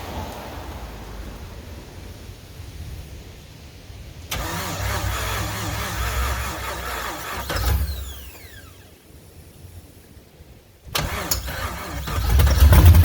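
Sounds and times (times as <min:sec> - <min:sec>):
engine cranking on starter: 0:04.3 - 0:08.9, 0:10.9 - 0:13.0.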